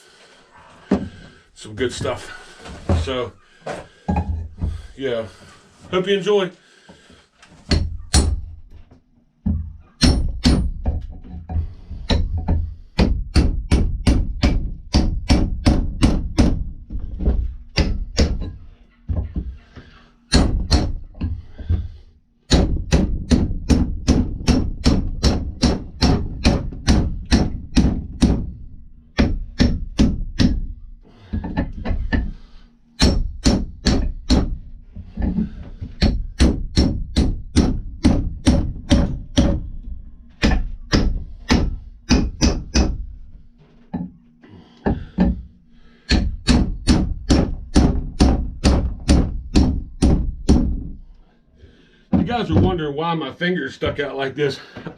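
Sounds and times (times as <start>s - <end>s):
hammer blows on wood: 20.3s - 43.2s.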